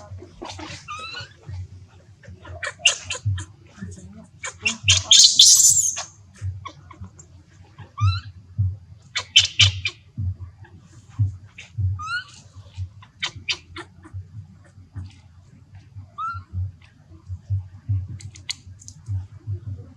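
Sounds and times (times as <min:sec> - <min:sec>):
baby monkey crying: 0:04.4 - 0:06.0, 0:09.2 - 0:09.9, 0:16.2 - 0:16.5
monkey screeching harshly: 0:04.4 - 0:06.0.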